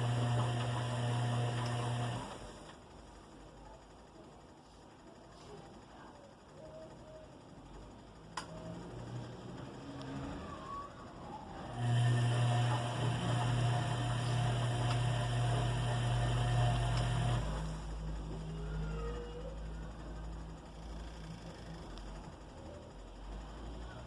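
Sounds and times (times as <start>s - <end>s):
washing machine motor humming: 0.0s - 24.0s
click: 8.3s - 8.6s, 21.9s - 22.1s.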